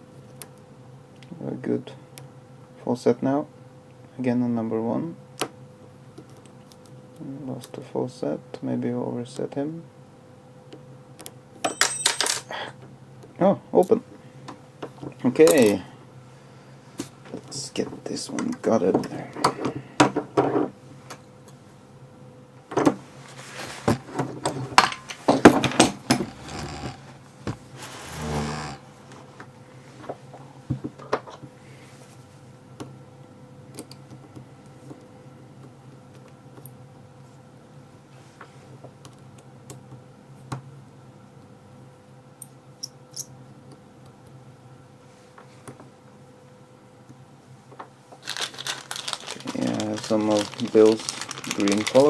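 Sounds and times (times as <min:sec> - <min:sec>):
faint steady hum: 0:00.0 - 0:52.0.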